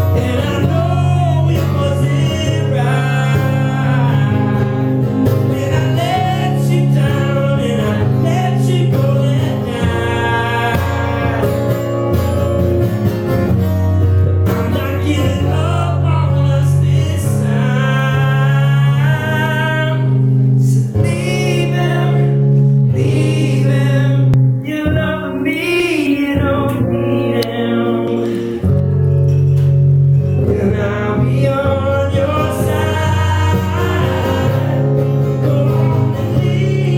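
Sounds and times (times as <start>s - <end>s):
person singing: 0.0s - 12.9s, 14.5s - 28.8s, 30.3s - 36.9s
guitar accompaniment: 0.0s - 36.9s.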